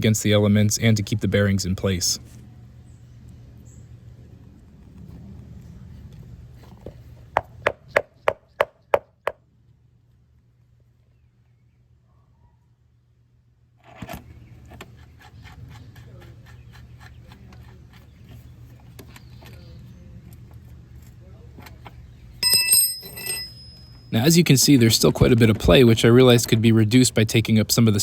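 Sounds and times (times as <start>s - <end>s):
metallic tapping of bearings: 22.4s - 24.2s.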